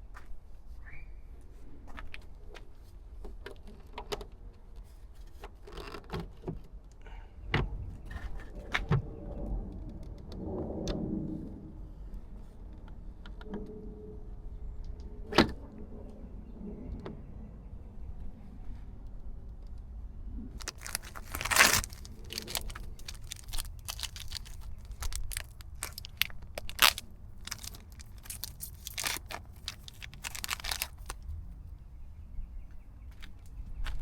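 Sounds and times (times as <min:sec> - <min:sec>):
crinkling and rustling: 0:20.6 - 0:31.6.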